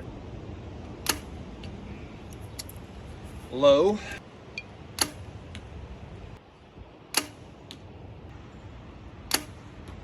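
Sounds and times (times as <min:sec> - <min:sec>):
arrow hitting target: 0:01.0 - 0:01.4, 0:05.0 - 0:05.3, 0:07.1 - 0:07.8, 0:09.3 - 0:09.6.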